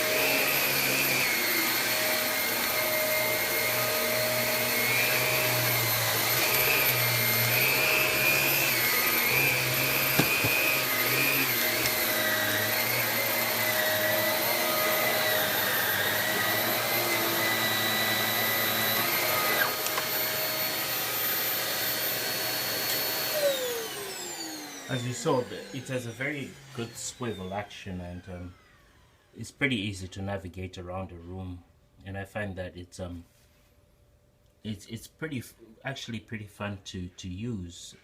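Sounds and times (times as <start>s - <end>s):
vacuum cleaner motor whine: 0.0s - 29.3s.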